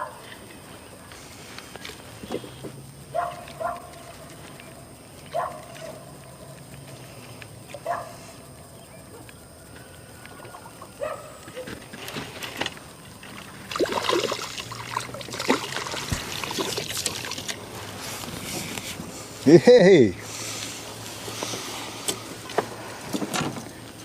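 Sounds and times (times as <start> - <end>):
water splashing and sloshing: 12.0 - 18.7.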